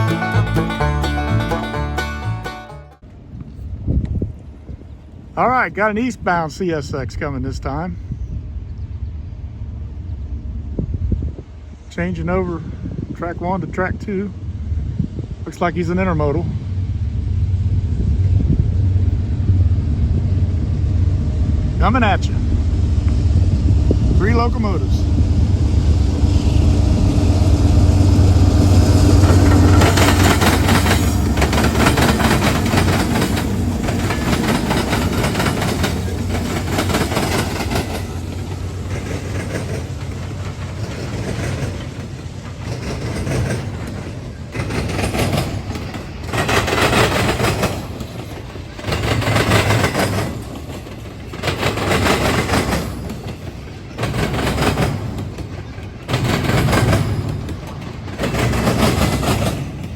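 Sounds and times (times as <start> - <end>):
diesel locomotives droning: 0.0 - 59.9
train wheels clattering: 26.0 - 59.9.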